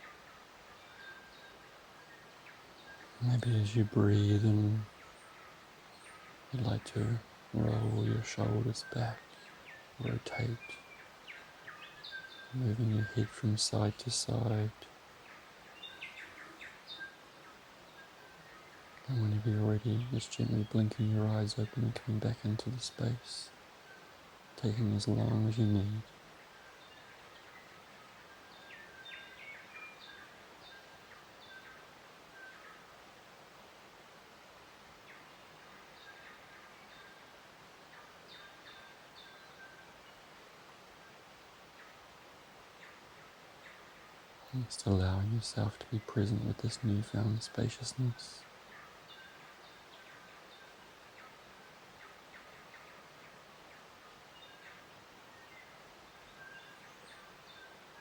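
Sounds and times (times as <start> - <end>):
bird chirps: 0.0 - 32.9
soft outdoor hiss: 0.0 - 58.0.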